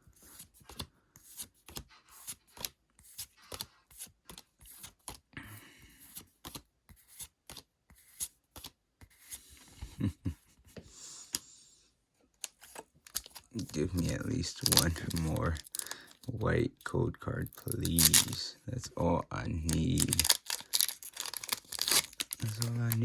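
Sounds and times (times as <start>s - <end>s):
card rustling slides: 12.4s - 16.2s.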